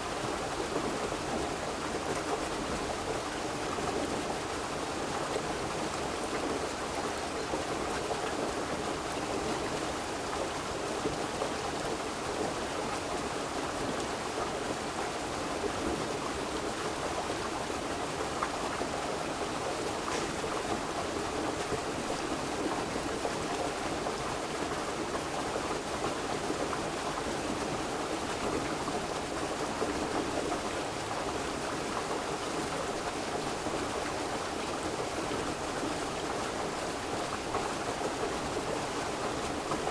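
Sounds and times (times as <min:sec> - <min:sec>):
river flowing: 0:16.4 - 0:39.9.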